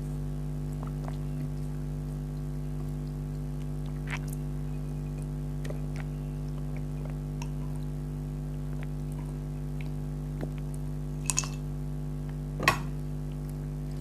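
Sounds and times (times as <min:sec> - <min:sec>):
electrical hum: 0:00.0 - 0:14.0
wet mouth eating sounds: 0:00.6 - 0:08.0, 0:08.6 - 0:10.9.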